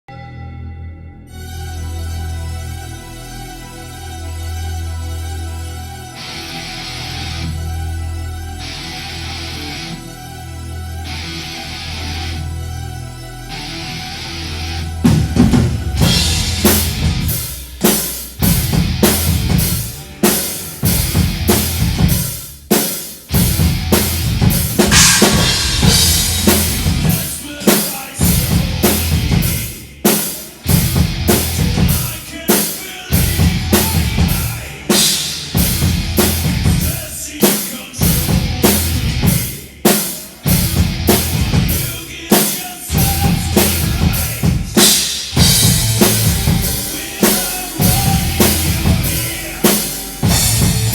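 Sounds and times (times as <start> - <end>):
loud drum-led music: 15.0 - 50.9
bass drum and snare hits: 23.4 - 27.2.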